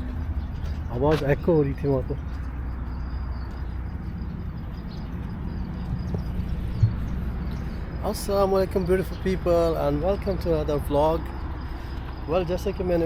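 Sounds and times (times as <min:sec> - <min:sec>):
low outdoor rumble: 0:00.0 - 0:13.0
short thump: 0:06.1 - 0:07.2.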